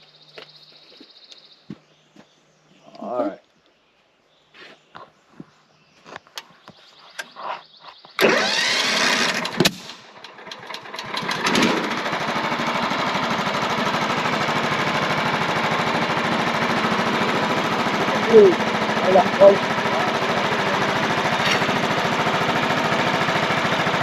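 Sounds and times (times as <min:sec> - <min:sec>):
sawmill engine running: 0:08.2 - 0:24.0.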